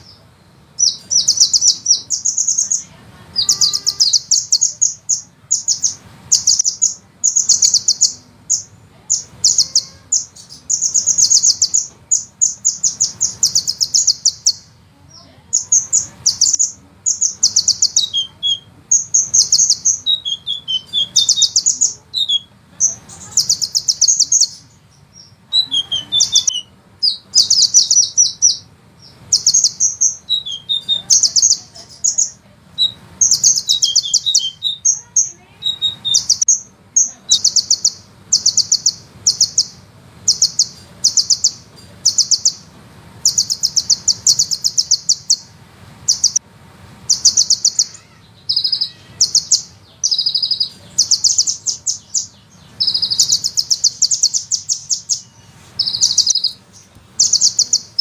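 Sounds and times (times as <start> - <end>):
sunbird trilling song: 0.0 - 58.0.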